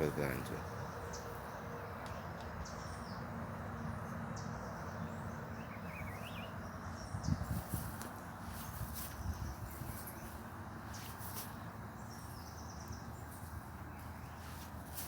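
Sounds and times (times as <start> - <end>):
high bird chirps: 5.6 - 7.7.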